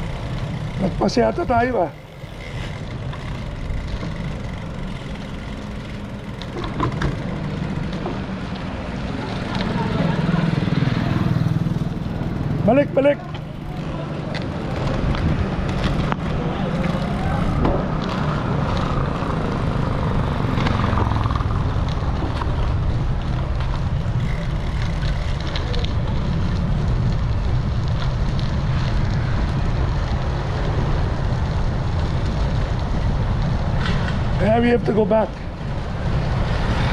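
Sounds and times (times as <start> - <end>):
road and tyre noise: 0.0 - 36.9
wind buffeting microphone: 13.4 - 36.9.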